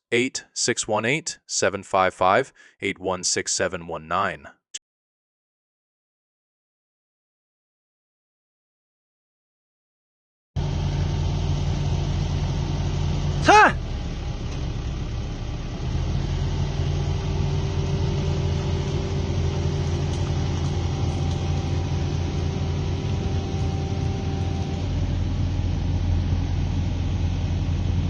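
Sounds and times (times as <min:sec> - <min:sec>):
excavator diesel engine idling: 0:10.6 - 0:28.0
thin steady whine: 0:10.6 - 0:28.0.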